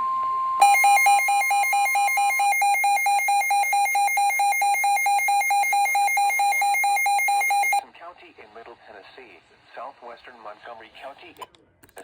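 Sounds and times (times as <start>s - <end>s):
steady warning alarm tone: 0.5s - 7.8s
rapid alarm beeping: 0.6s - 7.8s.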